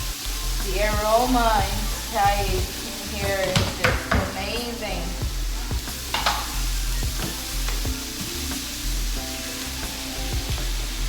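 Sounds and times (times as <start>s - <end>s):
faint background music: 0.0s - 11.0s
vegetables sizzling in a pan: 0.0s - 11.0s
utensil scraping a pan: 5.9s - 8.6s.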